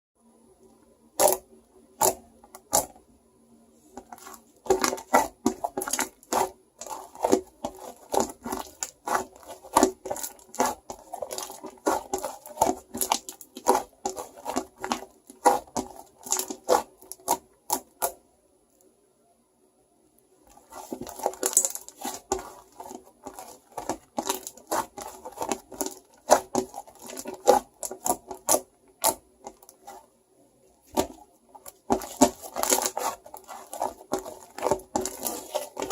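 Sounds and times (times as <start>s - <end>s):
shaving foam squished by hand: 4.0s - 18.2s, 20.5s - 30.0s, 30.9s - 35.9s.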